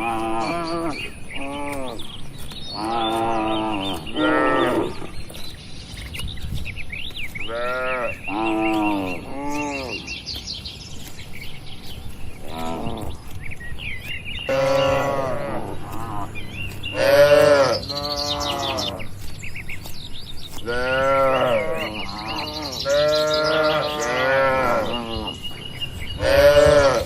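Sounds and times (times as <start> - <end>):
cattle mooing: 0.0 - 2.1, 2.8 - 5.2, 7.5 - 10.0, 12.4 - 13.2, 14.5 - 19.2, 20.6 - 25.5, 26.2 - 27.0.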